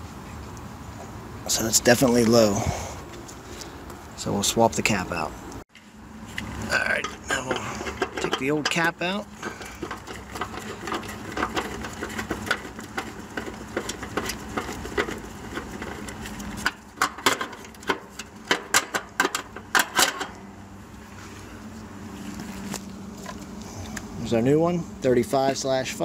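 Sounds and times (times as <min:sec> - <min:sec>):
light metallic clicks and clatter: 0:06.3 - 0:20.4.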